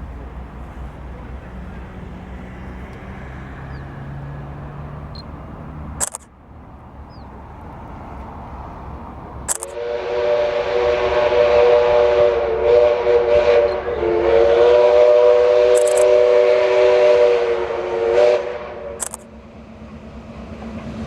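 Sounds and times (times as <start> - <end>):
steam whistle blasts: 9.6 - 19.0.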